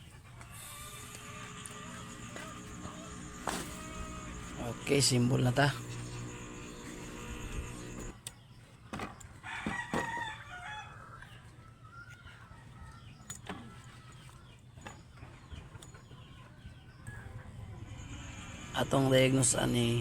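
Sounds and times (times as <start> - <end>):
steady hum: 0.5 - 8.2, 17.8 - 20.0
rooster crowing: 0.6 - 5.0, 9.4 - 11.3.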